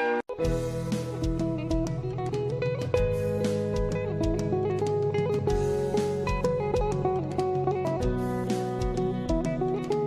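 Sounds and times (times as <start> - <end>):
guitar-led background music: 0.0 - 10.0.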